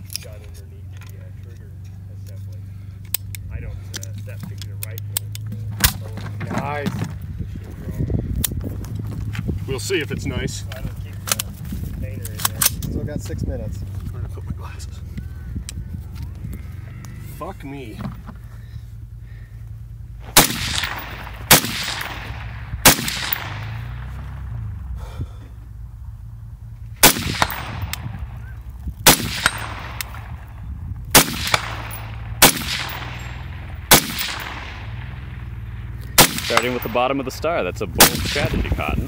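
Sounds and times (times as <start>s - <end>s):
steady low hum: 0.0s - 39.0s
rifle shots with echo: 20.2s - 24.6s, 27.0s - 39.0s.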